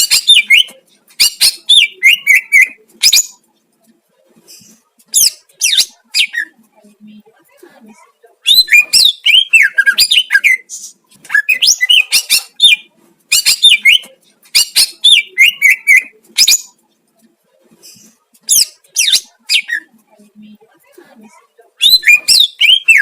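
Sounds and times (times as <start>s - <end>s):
bird singing whistles and chirps: 21.8s - 23.0s.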